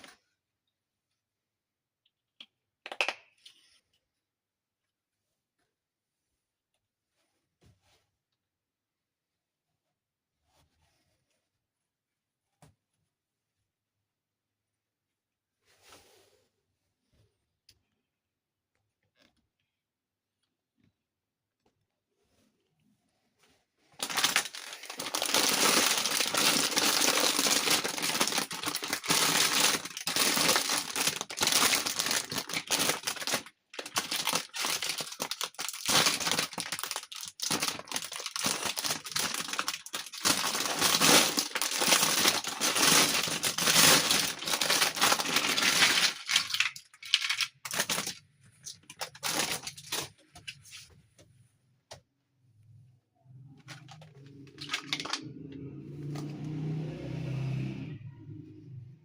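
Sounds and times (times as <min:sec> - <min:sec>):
packaging wrapper crinkling: 0:24.0 - 0:50.4, 0:53.7 - 0:55.3.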